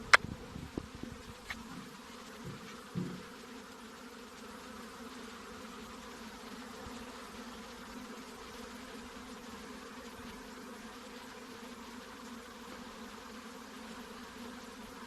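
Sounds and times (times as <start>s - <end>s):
bees buzzing: 0.0s - 15.0s
short low bump: 2.4s - 3.3s.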